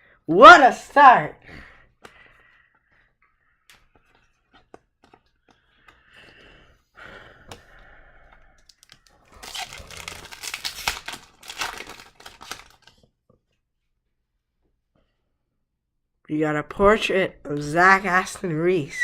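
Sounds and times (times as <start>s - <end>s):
cards tapping and clicking: 3.7s - 6.4s
plastic packaging crinkling: 8.6s - 13.0s.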